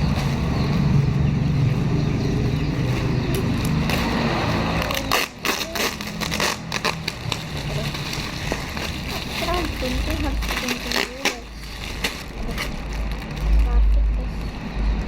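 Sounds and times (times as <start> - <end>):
sharp crackling and crinkling: 0.0 - 15.0.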